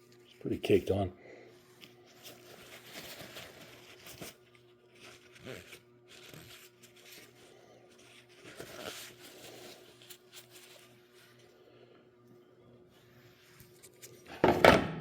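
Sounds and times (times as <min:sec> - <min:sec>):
paper towel scrubbing: 0:02.1 - 0:11.5.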